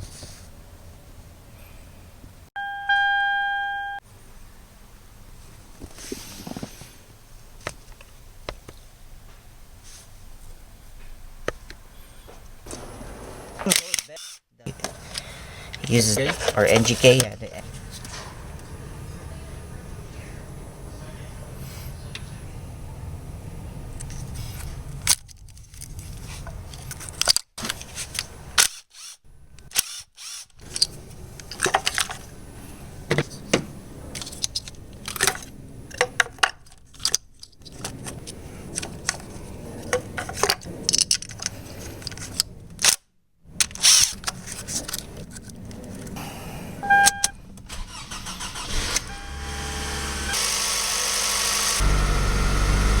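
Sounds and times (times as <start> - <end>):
car engine starting and running: 14.7 - 25.2, 46.2 - 53.0.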